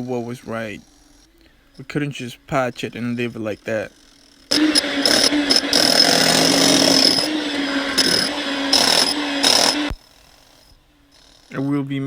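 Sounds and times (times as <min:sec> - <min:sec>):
rotary hammer chiseling concrete: 0:04.5 - 0:10.0.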